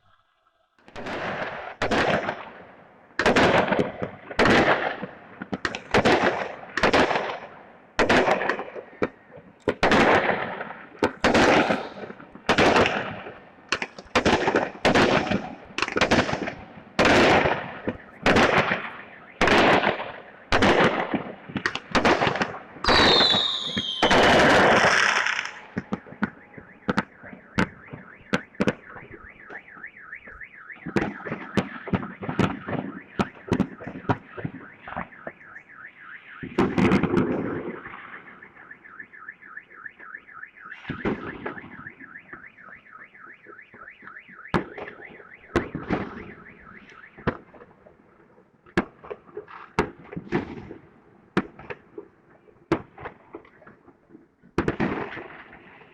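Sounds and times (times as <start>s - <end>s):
fireworks bursting and cracking: 0.8s - 29.6s, 30.2s - 35.4s, 36.4s - 38.6s, 44.5s - 47.8s
car alarm wailing: 8.3s - 13.5s, 14.3s - 47.9s
falling whistle: 22.9s - 26.9s.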